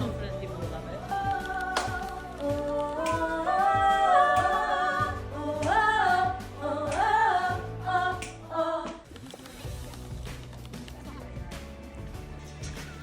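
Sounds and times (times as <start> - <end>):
women singing in harmony: 0.0 - 9.1.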